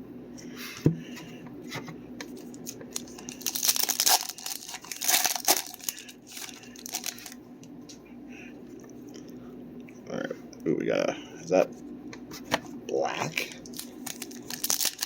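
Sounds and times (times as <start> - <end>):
foil wrapper tearing and crinkling: 2.4 - 7.4, 13.6 - 15.0.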